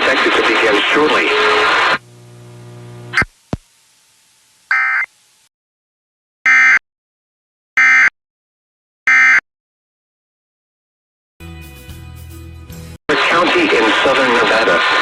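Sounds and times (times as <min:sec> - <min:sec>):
hum: 0:00.0 - 0:05.5.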